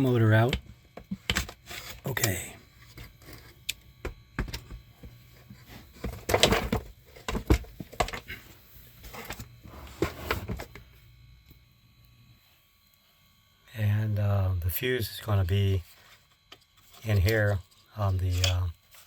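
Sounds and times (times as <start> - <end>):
knocks and scraping of vacuum parts: 0.4 - 10.8.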